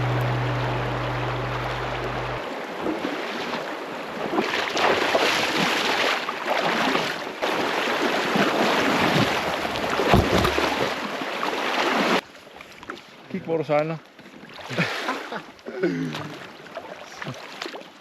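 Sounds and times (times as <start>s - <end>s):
held low music note: 0.0s - 2.4s
rushing water: 0.0s - 2.4s
wind buffeting microphone: 0.0s - 2.4s.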